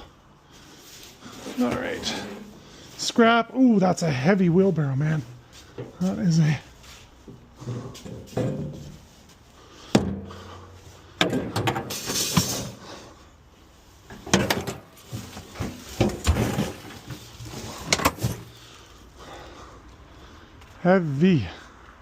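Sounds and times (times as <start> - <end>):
wheelbarrow knocking and clunking: 7.6 - 9.0, 9.9 - 10.6, 11.2 - 12.8, 14.1 - 18.5.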